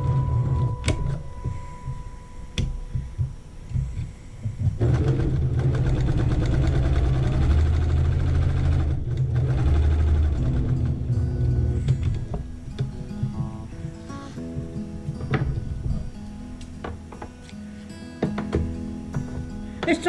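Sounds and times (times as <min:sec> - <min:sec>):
sewing machine stitching: 0:04.8 - 0:11.8.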